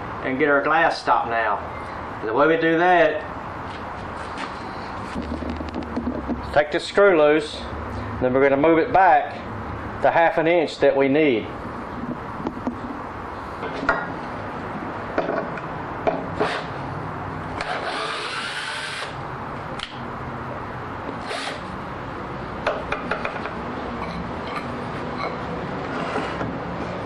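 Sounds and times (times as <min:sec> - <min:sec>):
drill backing out screw: 0:17.6 - 0:19.2, 0:21.2 - 0:21.7.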